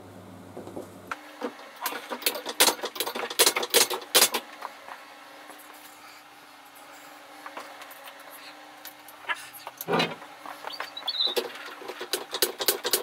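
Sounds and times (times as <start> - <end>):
faint steady hum: 0.0 - 2.2
sharp metal clicks and clatters: 1.8 - 4.4, 11.1 - 13.0.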